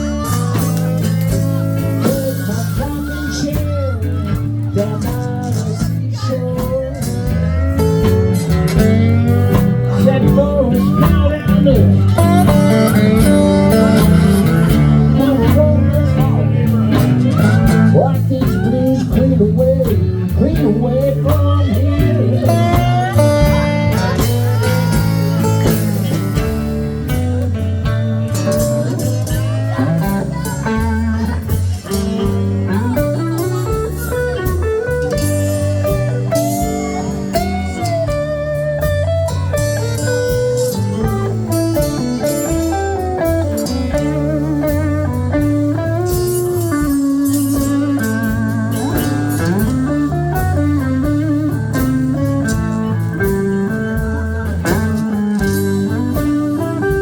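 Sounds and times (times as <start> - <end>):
bass line: 0.0 - 57.0
drums: 0.0 - 57.0
lead guitar solo: 0.0 - 57.0.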